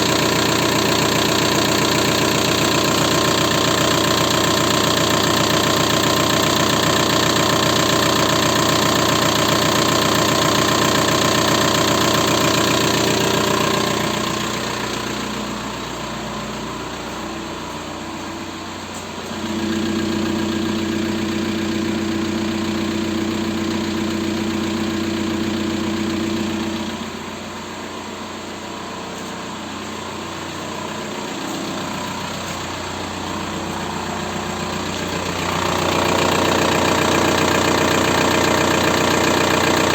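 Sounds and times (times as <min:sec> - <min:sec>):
diesel engine knocking: 0:00.0 - 0:39.9.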